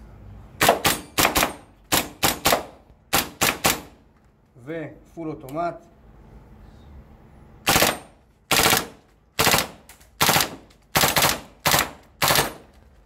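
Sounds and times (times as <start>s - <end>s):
airsoft rifle firing bursts: 0.6s - 3.9s, 7.7s - 12.7s.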